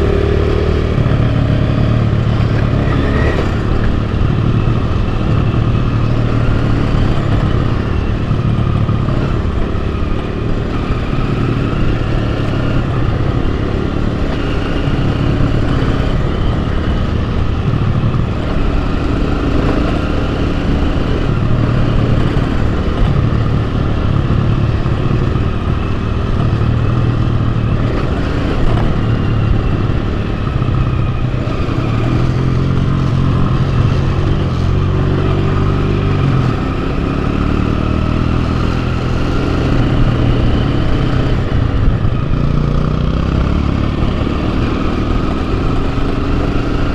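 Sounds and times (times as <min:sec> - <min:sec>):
dirt bike engine running: 0:00.0 - 0:46.9.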